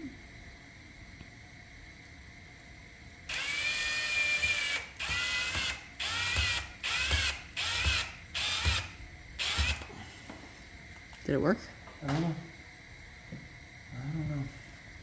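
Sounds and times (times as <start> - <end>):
power drill whine: 3.3 - 10.0.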